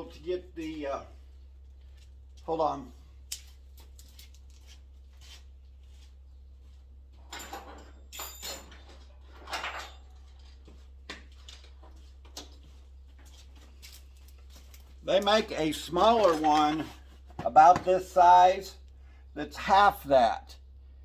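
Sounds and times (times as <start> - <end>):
low electrical hum: 0.0 - 21.0
scrapes and rustles of handling: 3.4 - 7.9, 8.6 - 17.5.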